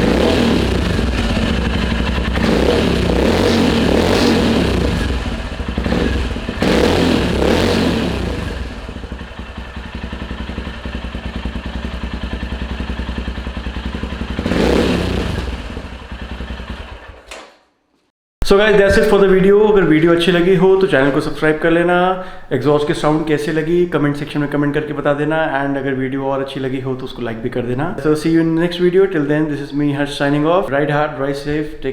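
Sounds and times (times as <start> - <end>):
motorcycle engine idling and revving: 0.0 - 17.3.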